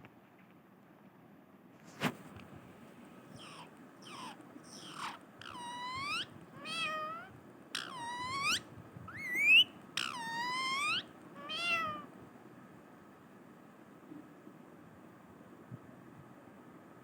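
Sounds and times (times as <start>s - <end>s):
parrot mimicking cat meows: 3.4s - 12.1s.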